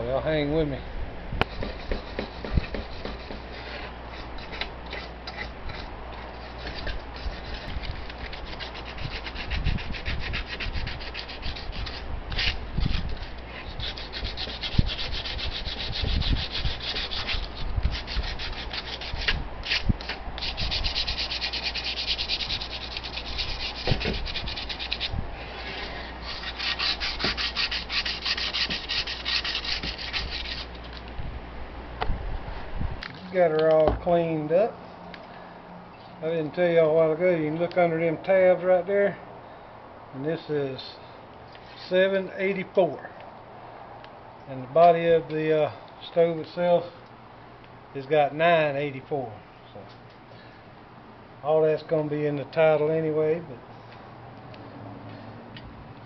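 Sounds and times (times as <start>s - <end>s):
hand sanding metal: 1.4s - 30.8s.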